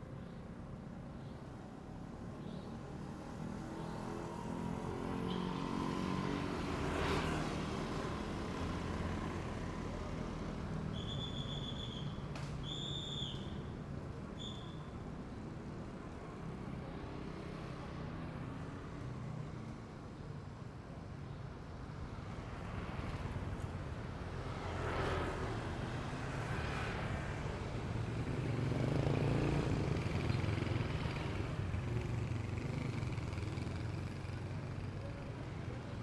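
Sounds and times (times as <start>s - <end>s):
road traffic passing: 22.2s - 35.9s.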